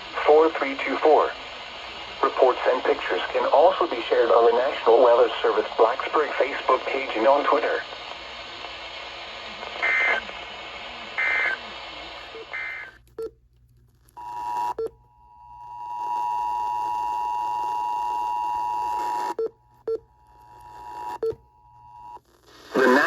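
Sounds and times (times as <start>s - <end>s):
radio hiss: 0.0s - 13.0s, 22.4s - 23.0s.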